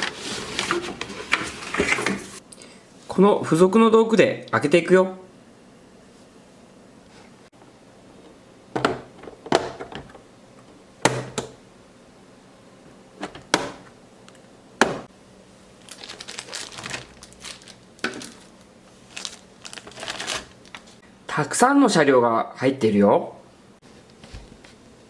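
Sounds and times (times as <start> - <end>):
packaging rustling: 15.8 - 21.0.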